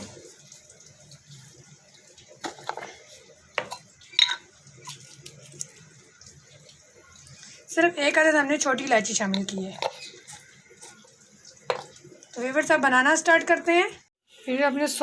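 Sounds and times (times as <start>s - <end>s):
kitchenware clinking: 3.6s - 4.6s.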